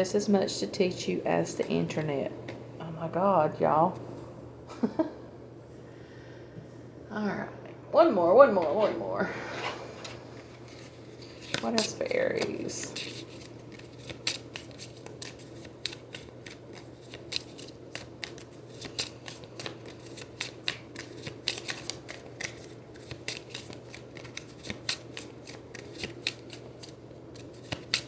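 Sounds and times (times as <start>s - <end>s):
faint steady hum: 0.0s - 28.0s
cards being shuffled: 9.9s - 28.0s.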